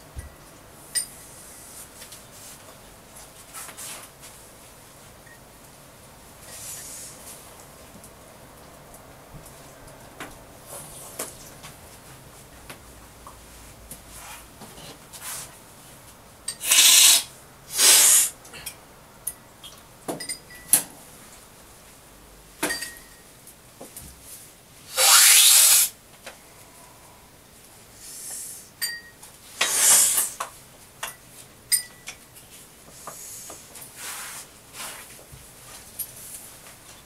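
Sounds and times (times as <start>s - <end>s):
spoons clinking against cups: 22.6s - 23.2s, 28.8s - 29.9s, 31.0s - 32.2s.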